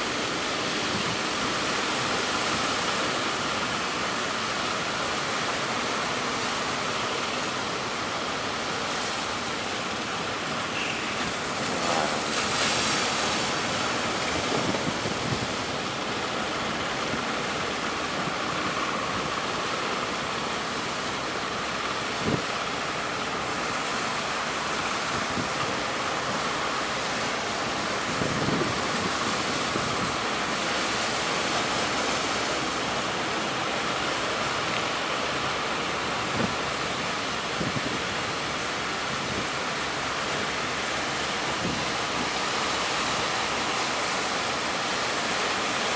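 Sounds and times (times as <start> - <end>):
waves breaking: 0.0 - 45.9
wind buffeting microphone: 13.4 - 15.9, 27.8 - 30.4, 36.1 - 39.6, 41.4 - 42.4.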